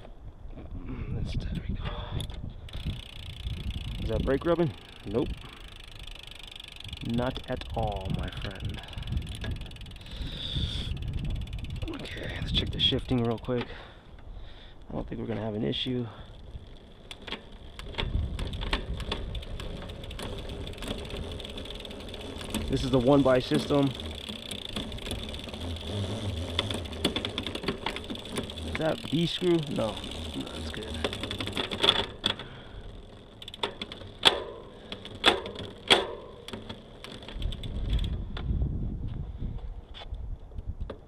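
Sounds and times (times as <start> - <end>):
bicycle chain ticking: 2.2 - 14.6, 15.6 - 38.5
gear shifting clicks: 16.2 - 38.5.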